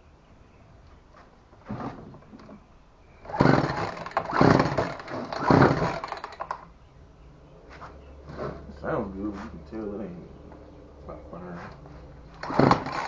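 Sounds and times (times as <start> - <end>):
chainsaw engine turning over: 3.2 - 6.7, 12.3 - 13.0
chainsaw recoil starter pulls: 3.2 - 6.7, 12.3 - 13.0.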